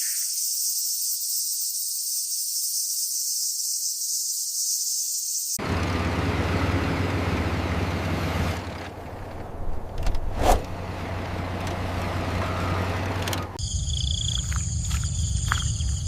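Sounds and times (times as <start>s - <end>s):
heavy vehicle engine humming: 5.6s - 16.0s.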